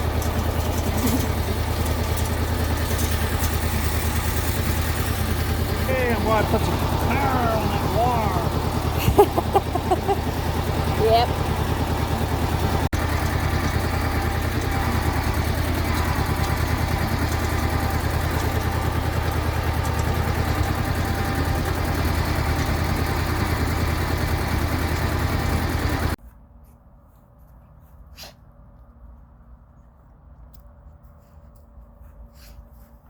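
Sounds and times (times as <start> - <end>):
engine running: 0.0 - 26.2.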